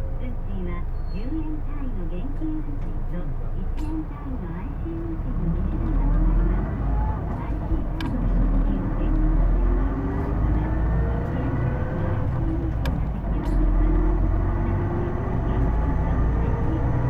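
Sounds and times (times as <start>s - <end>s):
bus engine rumble with whine: 0.0s - 17.0s.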